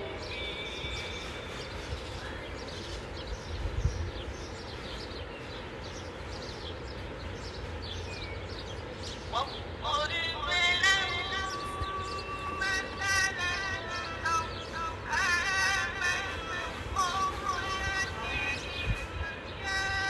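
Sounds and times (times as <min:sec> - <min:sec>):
wind: 0:00.0 - 0:20.0
high bird chirps: 0:00.2 - 0:20.0
music with melodic voice: 0:09.4 - 0:20.0.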